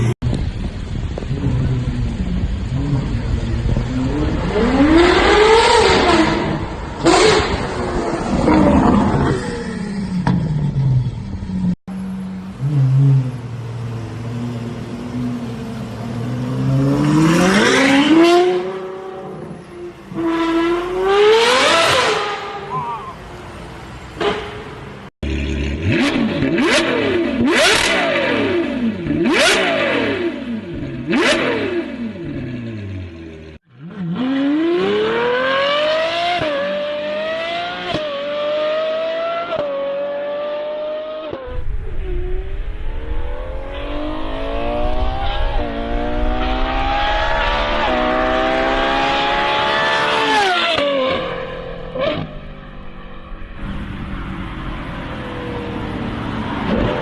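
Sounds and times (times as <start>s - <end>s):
sports car engine revving: 25.2s - 57.0s.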